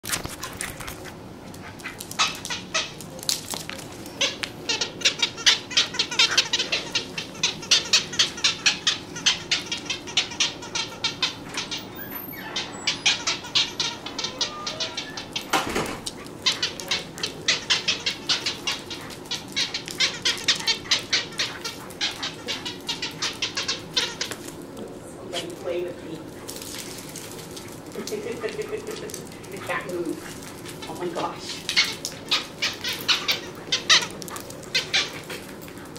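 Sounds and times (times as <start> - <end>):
short high squeaks: 10.6 - 15.6.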